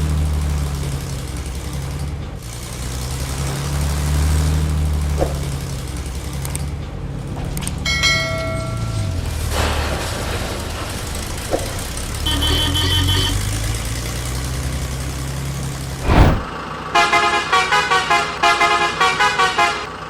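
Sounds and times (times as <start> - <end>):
vehicle engine rumble: 13.3 - 16.5
whoosh: 16.0 - 16.5
fast horn-like toots: 16.0 - 19.9
horn beeps: 17.0 - 19.9.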